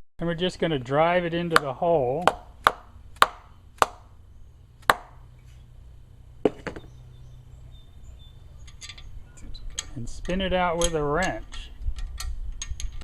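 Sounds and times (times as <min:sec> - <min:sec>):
hammer striking metal tap: 0:01.5 - 0:04.1, 0:04.8 - 0:05.2.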